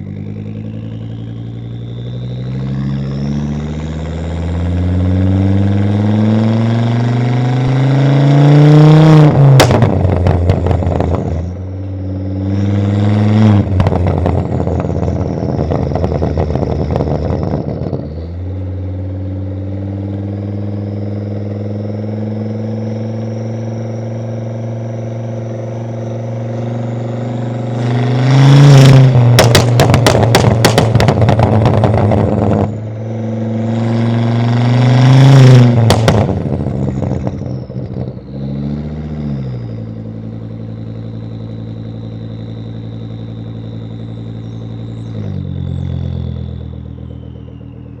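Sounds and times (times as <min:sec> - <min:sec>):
car engine idling and revving: 0:00.0 - 0:48.0
exhaust pops and crackles: 0:09.5 - 0:11.4, 0:13.6 - 0:18.0, 0:28.9 - 0:32.8, 0:35.6 - 0:38.2.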